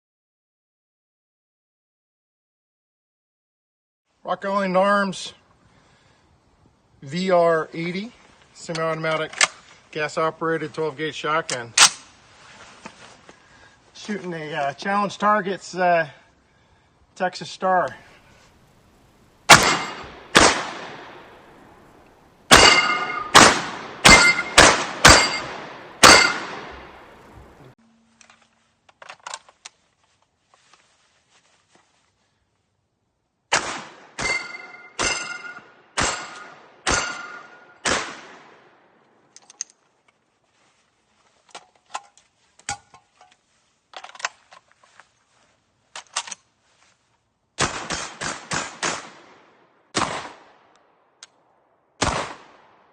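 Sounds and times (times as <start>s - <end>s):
shotgun shots: 19.5s - 21.4s, 22.5s - 27.1s, 33.5s - 38.7s, 47.6s - 50.6s, 52.0s - 52.8s
steel plates ringing: 22.5s - 23.4s, 24.0s - 26.5s, 34.2s - 35.6s.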